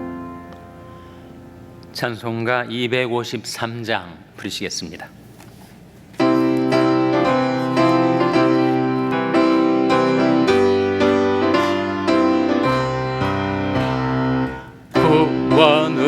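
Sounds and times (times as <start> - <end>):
keyboard playing hymn chords: 0.0 - 1.8, 6.2 - 16.0.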